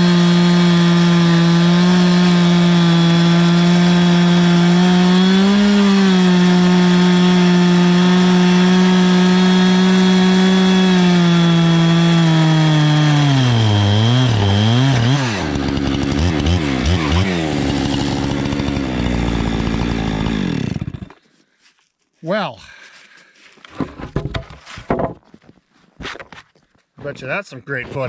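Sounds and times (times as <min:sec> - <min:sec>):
chainsaw cutting wood: 0:00.0 - 0:21.2.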